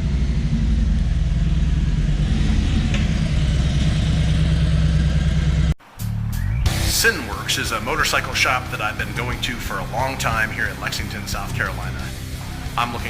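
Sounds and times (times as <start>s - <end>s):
motorcycle engine running at low revs: 0.0s - 5.8s.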